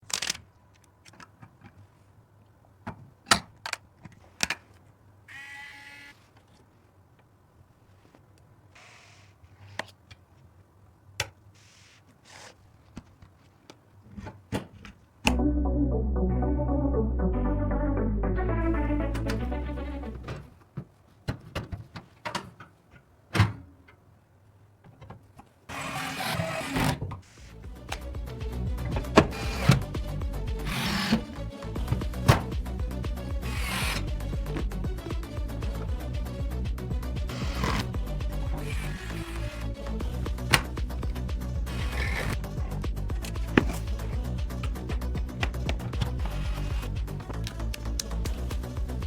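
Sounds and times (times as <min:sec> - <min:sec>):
background music: 0:15.3 - 0:20.5, 0:27.5 - 0:49.0.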